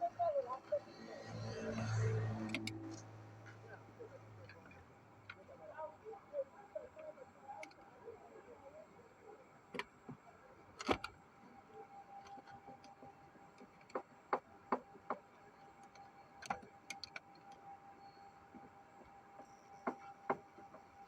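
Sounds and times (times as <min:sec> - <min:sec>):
faint steady whine: 0:00.0 - 0:21.0
sharp clicks and knocks: 0:13.6 - 0:17.6.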